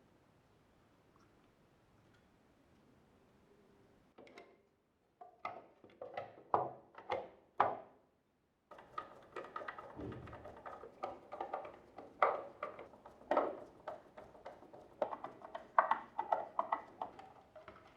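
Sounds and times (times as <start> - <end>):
coffee machine parts knocking: 8.8 - 17.2.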